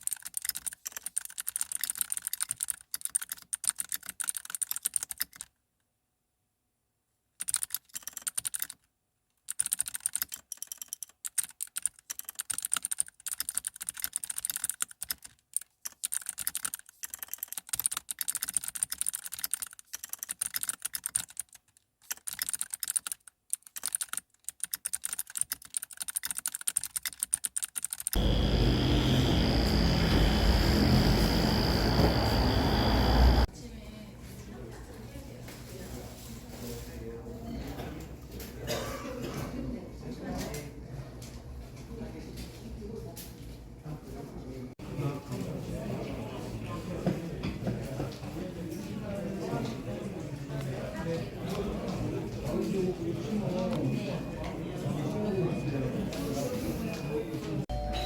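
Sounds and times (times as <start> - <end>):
fast typing on keyboard: 0.0 - 5.5, 7.4 - 8.8, 9.5 - 33.5
faint high tone: 57.7 - 58.0.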